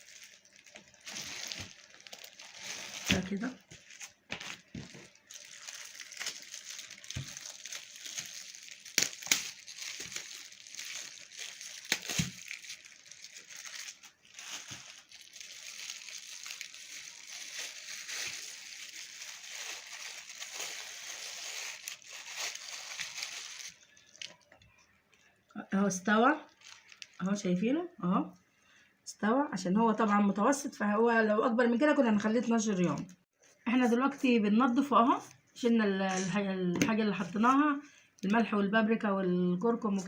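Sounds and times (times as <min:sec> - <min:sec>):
plastic bags crinkling: 0:00.0 - 0:24.9, 0:26.3 - 0:27.4.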